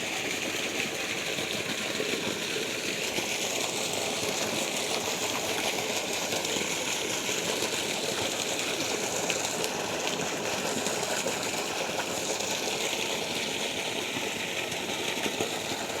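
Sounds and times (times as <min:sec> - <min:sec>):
water rushing and splashing: 0:00.0 - 0:16.0.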